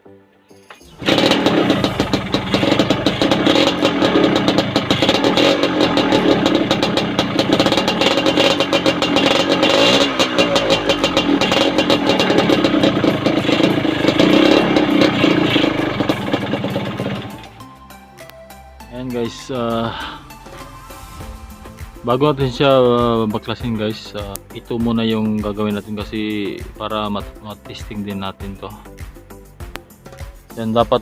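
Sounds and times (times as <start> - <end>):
motorcycle engine running: 0.9 - 17.6.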